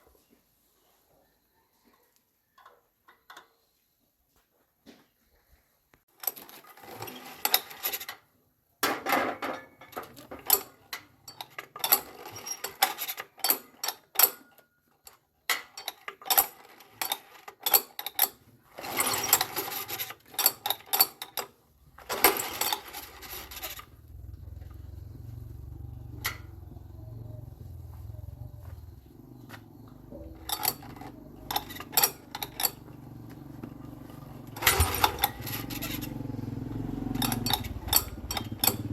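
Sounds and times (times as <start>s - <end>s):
hand tool scraping metal: 34.5s - 36.2s.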